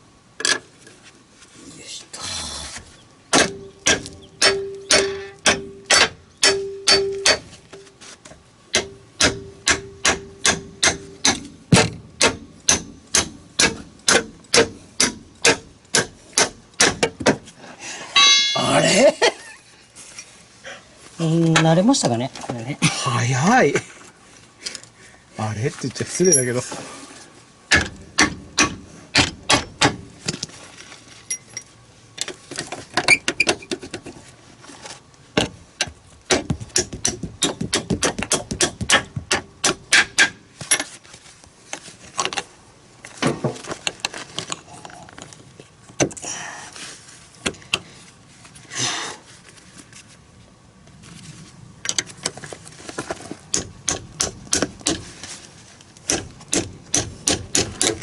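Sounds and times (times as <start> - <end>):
sharp metallic clicks and knocks: 3.3 - 7.9, 8.7 - 17.4, 35.4 - 40.9, 56.0 - 58.0.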